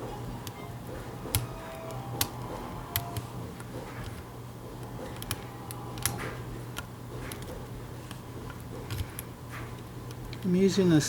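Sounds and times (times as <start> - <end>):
steady low hum: 0.0 - 11.0
lock picking metallic clicks: 5.1 - 7.5.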